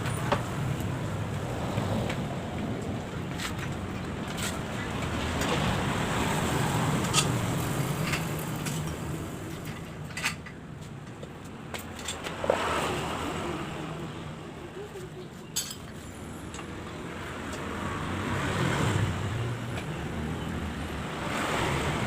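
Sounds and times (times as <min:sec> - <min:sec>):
vehicle engine rumbling: 0:00.0 - 0:22.0.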